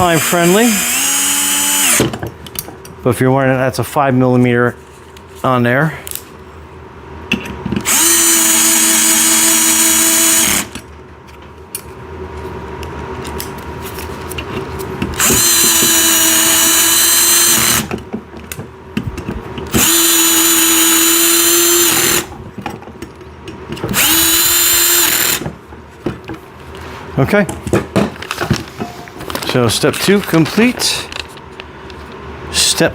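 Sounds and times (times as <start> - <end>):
power drill driving bolts: 0.2 - 2.2, 7.8 - 10.8, 15.2 - 17.9, 19.7 - 22.3, 23.9 - 25.5.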